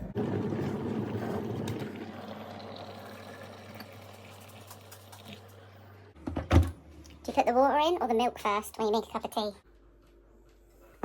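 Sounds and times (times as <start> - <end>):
water poured into a mug: 0.3 - 5.6.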